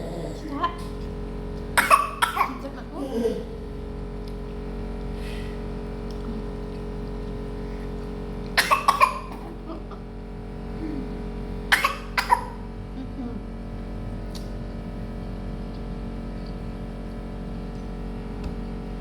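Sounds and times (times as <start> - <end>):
steady background hum: 0.0 - 19.0
person coughing: 1.8 - 3.6, 8.6 - 9.9, 11.7 - 12.6.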